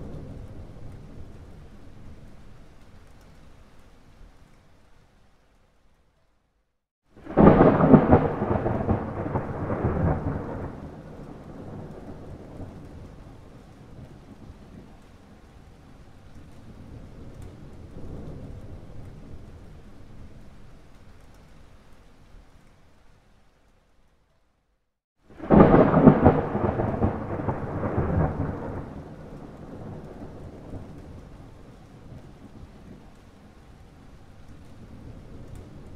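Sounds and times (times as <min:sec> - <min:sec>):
thunder crack and rumble: 0:00.0 - 0:02.5, 0:07.2 - 0:15.0, 0:16.4 - 0:20.6, 0:25.3 - 0:35.9.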